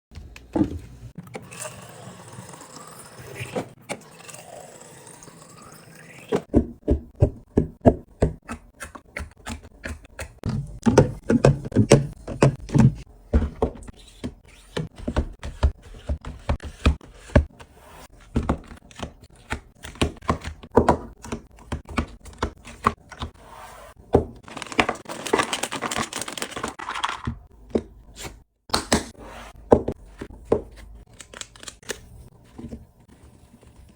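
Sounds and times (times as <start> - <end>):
items knocking and clacking: 6.4 - 17.5, 24.1 - 28.0
crinkly rustling: 24.4 - 27.3.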